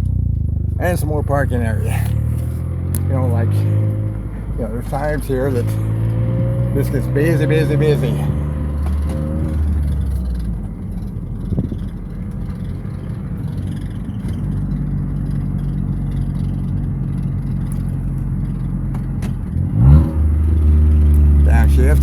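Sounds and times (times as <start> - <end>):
car engine humming from inside: 0.0 - 22.0.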